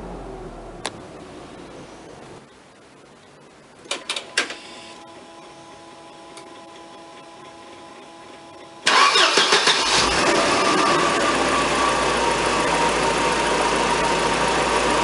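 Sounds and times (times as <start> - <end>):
car engine cranking and starting: 0.0 - 1.5, 8.8 - 15.0
faint steady hum: 0.0 - 8.9
ignition clicks: 8.9 - 10.1.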